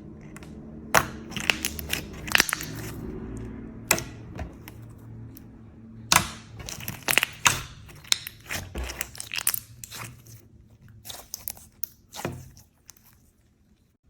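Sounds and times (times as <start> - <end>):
slime crunching and popping: 0.2 - 3.1, 6.1 - 13.3.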